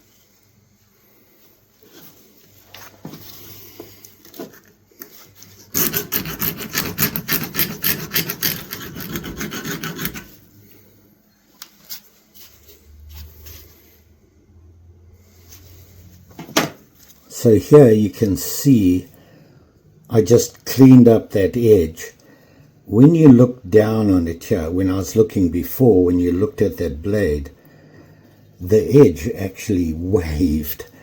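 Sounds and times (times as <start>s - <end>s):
knife blade rasping on abrasive: 5.7s - 10.3s.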